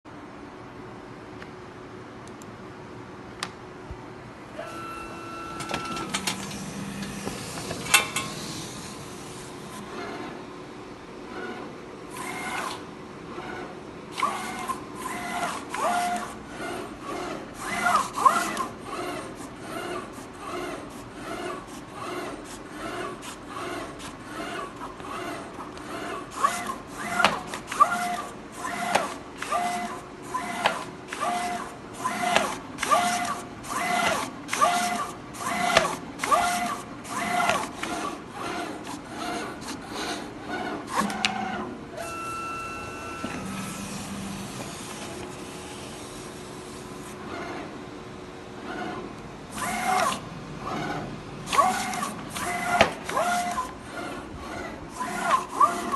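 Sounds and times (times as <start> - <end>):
cutting plotter motors whining: 4.4 - 55.9.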